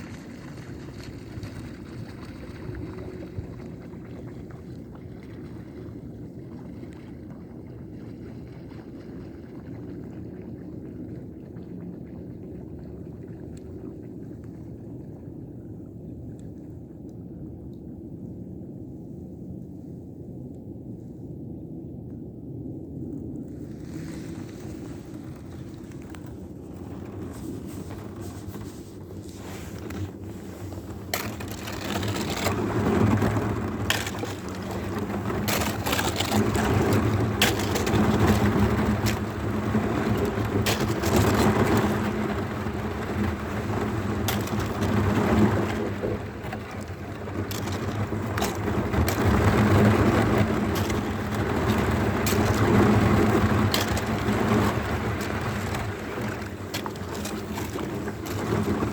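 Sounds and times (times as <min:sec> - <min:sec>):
wind and water rushing: 0:23.7 - 0:58.9.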